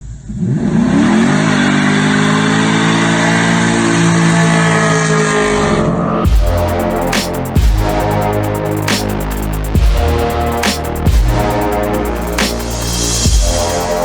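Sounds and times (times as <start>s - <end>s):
car engine revving: 0.3s - 14.0s.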